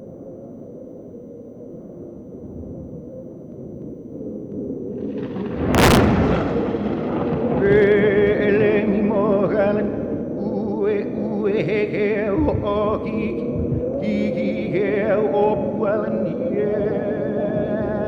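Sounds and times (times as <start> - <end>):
person singing with vibrato: 7.6 - 18.0.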